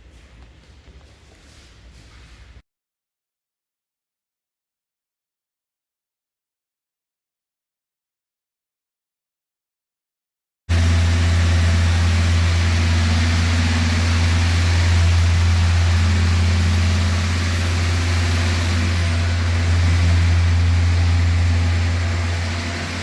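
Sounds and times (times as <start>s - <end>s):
car engine idling: 10.7s - 23.0s.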